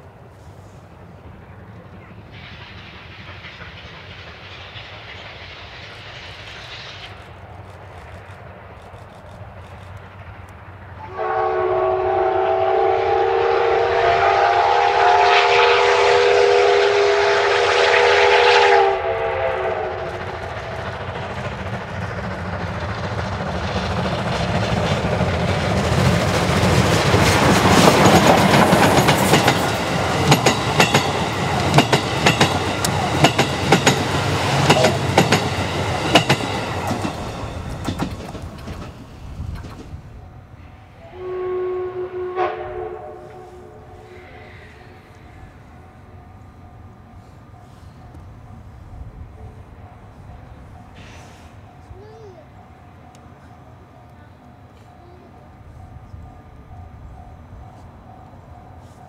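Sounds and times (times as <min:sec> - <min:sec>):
train wheels clicking over rail joints: 0:00.0 - 0:10.8, 0:18.0 - 0:41.0
locomotive rumble: 0:00.0 - 0:59.0
steam locomotive whistle: 0:11.0 - 0:20.4, 0:40.9 - 0:45.6.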